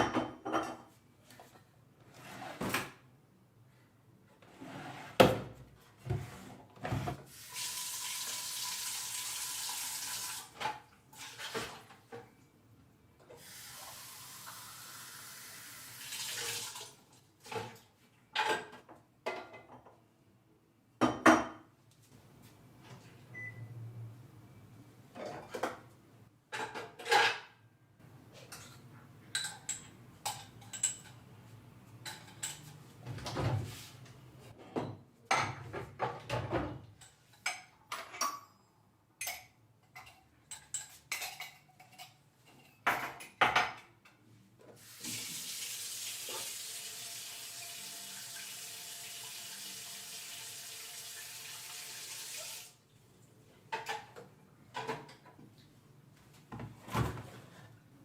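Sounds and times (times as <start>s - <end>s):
dishes and cutlery clinking: 28.3s - 31.3s, 32.0s - 32.8s, 34.6s - 44.2s.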